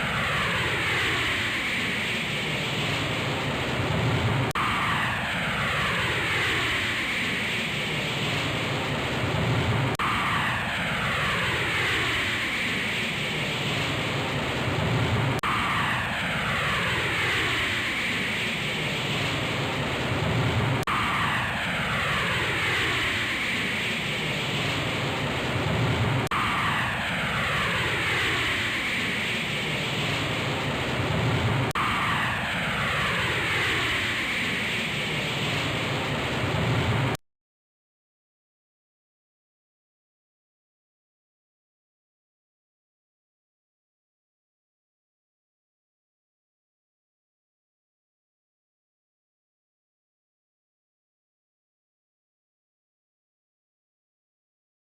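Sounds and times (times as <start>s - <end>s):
aircraft engine whine: 0.0s - 37.2s.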